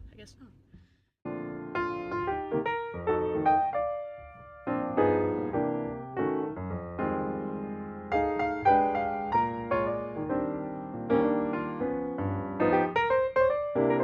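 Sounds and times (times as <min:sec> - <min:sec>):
piano chords ringing: 0:01.3 - 0:14.0.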